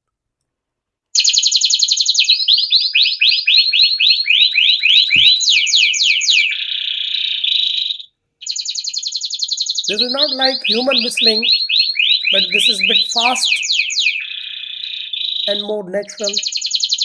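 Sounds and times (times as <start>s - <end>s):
canary singing trills: 8.4s - 17.0s.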